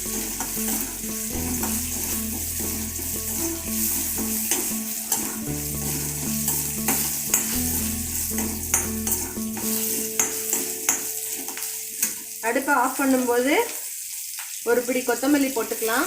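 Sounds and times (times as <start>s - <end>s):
food sizzling in hot oil: 0.0s - 16.0s
spoon scraping a pan: 0.1s - 12.4s.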